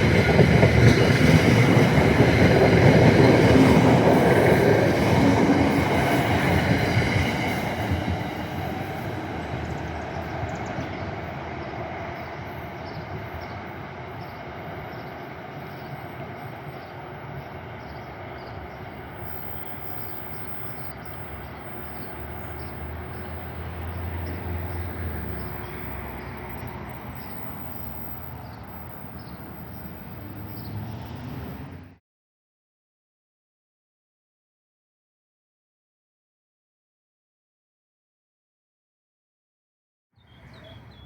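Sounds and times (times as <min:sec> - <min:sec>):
train wheels rumbling on track: 0:00.0 - 0:32.0.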